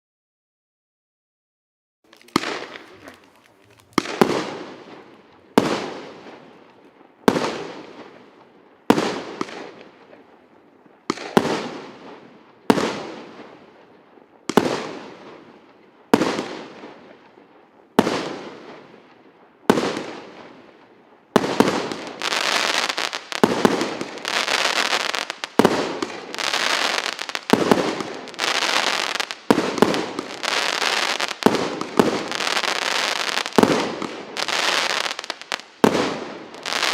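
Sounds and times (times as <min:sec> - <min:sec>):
fireworks bursting: 0:02.1 - 0:36.9
fireworks crackling: 0:02.1 - 0:36.9.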